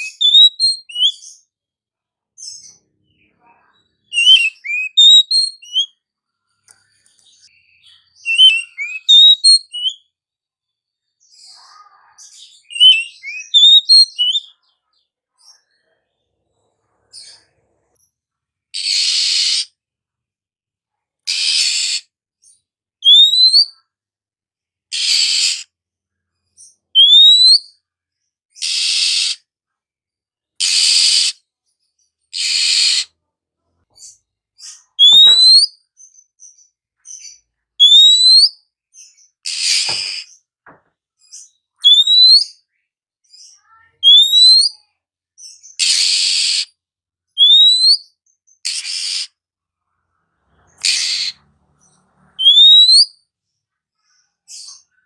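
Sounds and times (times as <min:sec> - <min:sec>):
bird harsh churring calls: 0:04.1 - 0:05.9, 0:08.2 - 0:10.0, 0:12.6 - 0:14.5, 0:18.8 - 0:19.7, 0:21.3 - 0:22.0, 0:24.9 - 0:25.6, 0:30.6 - 0:31.4, 0:32.3 - 0:33.1, 0:34.8 - 0:35.7, 0:41.8 - 0:42.5, 0:45.8 - 0:46.7, 0:50.6 - 0:51.5, 0:52.3 - 0:53.1
bird rising whistles: 0:52.4 - 0:53.1.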